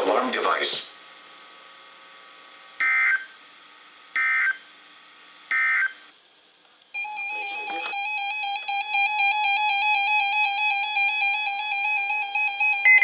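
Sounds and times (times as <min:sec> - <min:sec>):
faint radio hiss: 0:00.0 - 0:02.7
synthesized tune: 0:07.0 - 0:13.0.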